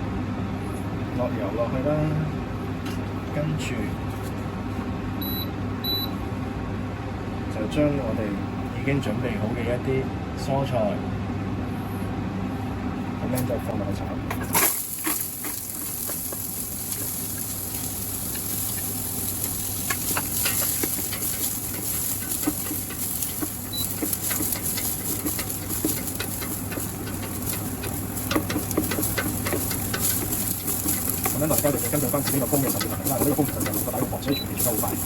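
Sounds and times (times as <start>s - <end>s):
oil crackles and pops: 14.4s - 35.0s
onions sizzling in hot oil: 14.4s - 35.0s.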